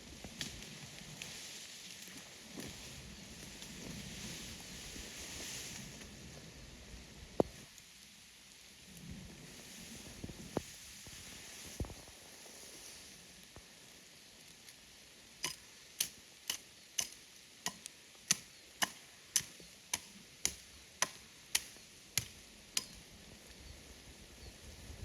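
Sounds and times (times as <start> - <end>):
steady background hiss: 0.0 - 25.0
tool striking wood: 17.0 - 23.0.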